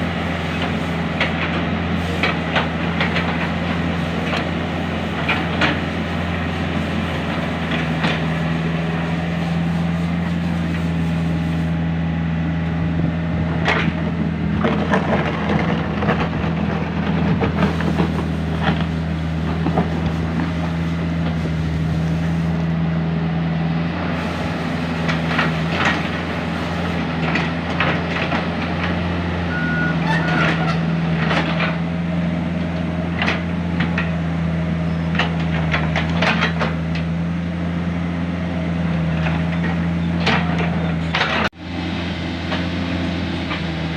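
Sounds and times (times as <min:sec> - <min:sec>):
excavator diesel engine running: 0:00.0 - 0:43.9
short clanks and knocks: 0:35.1 - 0:37.1, 0:39.2 - 0:41.5.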